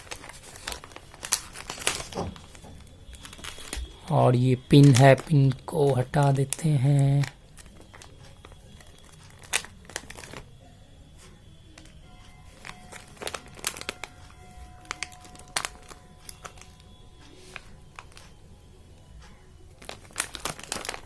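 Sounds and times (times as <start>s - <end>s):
toy packaging crinkling: 0.0s - 3.8s, 4.8s - 10.5s, 12.6s - 14.2s, 19.8s - 21.0s
faint background music: 0.0s - 21.0s.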